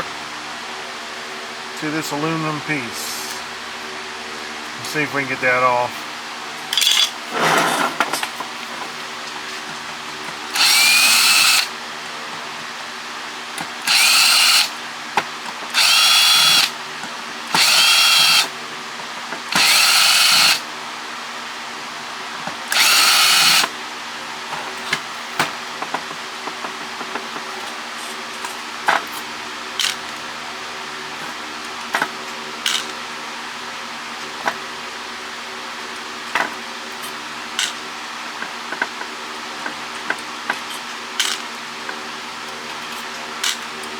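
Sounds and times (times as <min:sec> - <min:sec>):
cordless drill motor whining: 0:10.3 - 0:11.8, 0:13.6 - 0:14.8, 0:15.5 - 0:16.8, 0:17.5 - 0:18.6, 0:19.5 - 0:20.7, 0:22.6 - 0:23.8.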